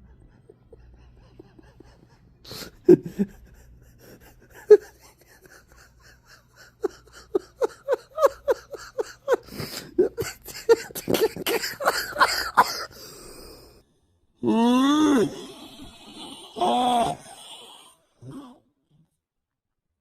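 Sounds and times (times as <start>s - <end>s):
small dog wheezing: 0.0s - 6.8s.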